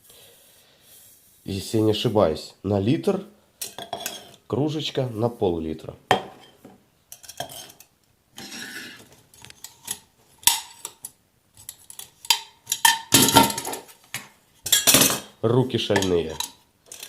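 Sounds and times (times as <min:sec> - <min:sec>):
metal stove parts clinking: 0:06.1 - 0:08.5, 0:09.6 - 0:13.9, 0:14.7 - 0:15.3, 0:15.9 - 0:17.0
metal scrape: 0:07.2 - 0:10.1.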